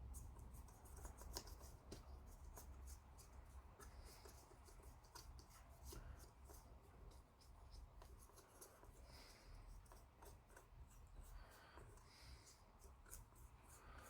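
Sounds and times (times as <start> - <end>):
paintbrush scratching on plastic: 0.2 - 14.0.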